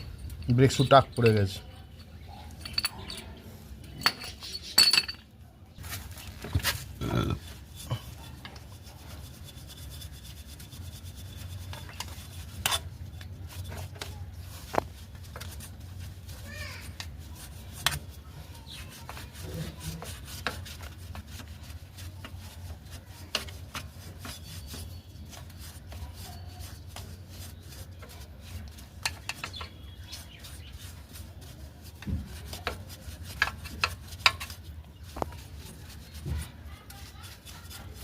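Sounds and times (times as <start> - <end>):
rubbing and scraping on brake parts: 0.0 - 38.0.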